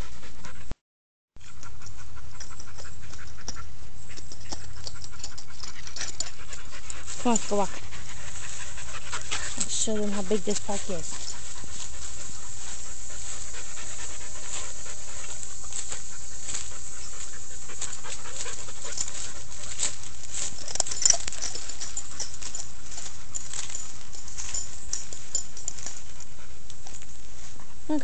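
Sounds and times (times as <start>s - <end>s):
dog panting: 0.0s - 0.8s, 1.4s - 28.0s
scratchy clicks and rustles: 14.5s - 27.5s.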